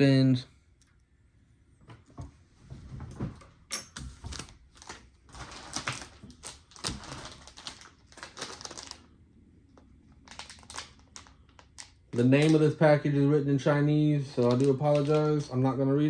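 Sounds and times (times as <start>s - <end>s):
plastic packaging crinkling: 4.3s - 9.2s, 9.8s - 12.8s, 14.3s - 16.0s.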